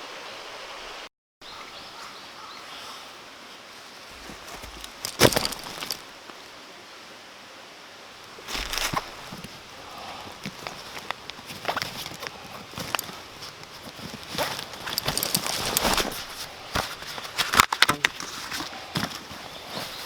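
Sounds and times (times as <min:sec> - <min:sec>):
rustling: 0:03.9 - 0:06.5, 0:08.2 - 0:20.0
footsteps: 0:04.1 - 0:06.0, 0:08.4 - 0:20.0.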